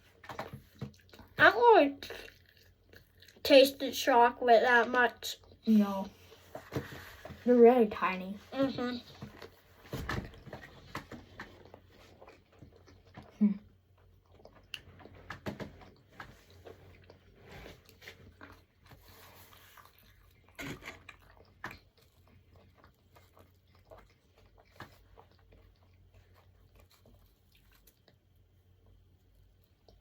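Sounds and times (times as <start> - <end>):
people chewing: 0.1 - 3.5, 4.8 - 7.4, 8.5 - 30.0.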